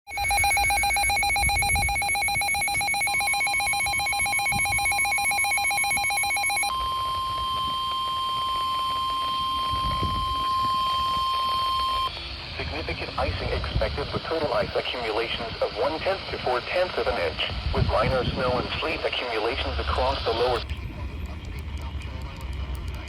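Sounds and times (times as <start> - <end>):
steady single-pitch alarm tone: 0.1 - 14.7
fast trilling alarm beeping: 0.1 - 18.5.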